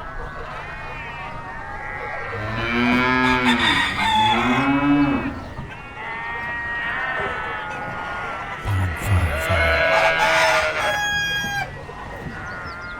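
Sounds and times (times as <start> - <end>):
high-pitched animal calls: 0.3 - 12.9
cows mooing: 1.8 - 11.7.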